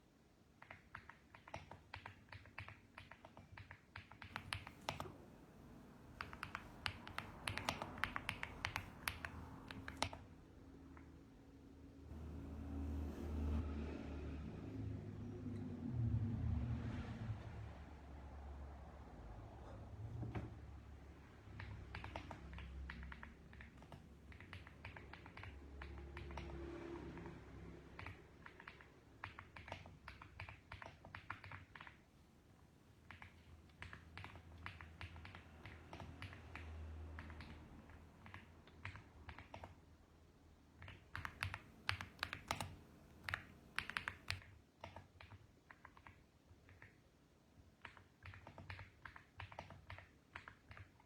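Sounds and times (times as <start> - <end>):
mechanical keyboard typing: 0.6 - 10.3, 21.5 - 27.3, 28.0 - 32.2, 33.0 - 39.8, 40.8 - 47.1, 47.8 - 51.0.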